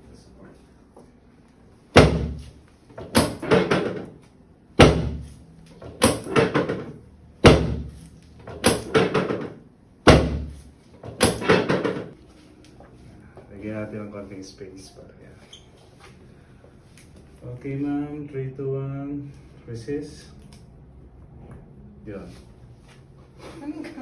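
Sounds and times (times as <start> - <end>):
sharp thuds on treatment table: 2.0 - 2.5, 4.8 - 5.3, 6.0 - 8.0, 10.1 - 10.6, 11.2 - 12.1.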